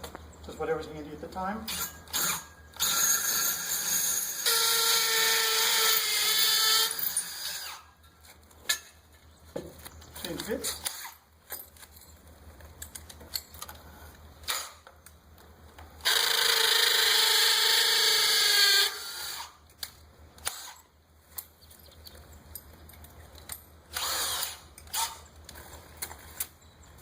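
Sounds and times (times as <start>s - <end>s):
power drill running: 1.7s - 7.9s, 16.0s - 19.6s, 23.9s - 25.2s.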